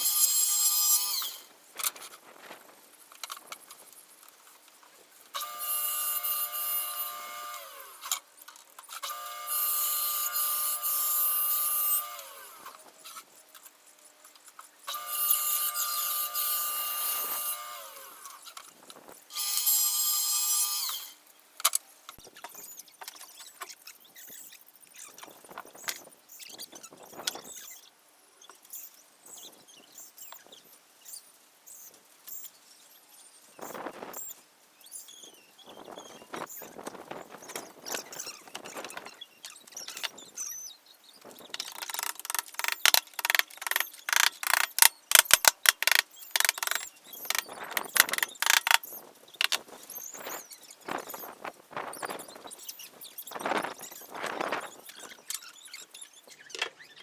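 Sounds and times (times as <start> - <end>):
clatter of handling wood: 41.6 - 48.8, 49.4 - 49.6
power tool motor whining: 41.6 - 48.8.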